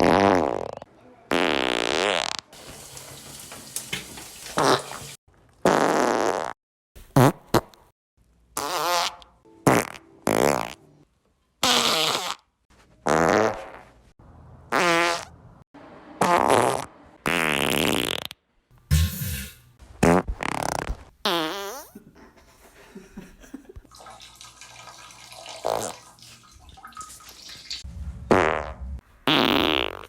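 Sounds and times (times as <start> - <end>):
fart sounds: 0.0 - 2.6, 4.6 - 5.0, 5.6 - 7.9, 8.6 - 10.8, 11.6 - 14.0, 14.7 - 15.4, 16.2 - 22.0, 25.6 - 26.0, 28.3 - 30.0.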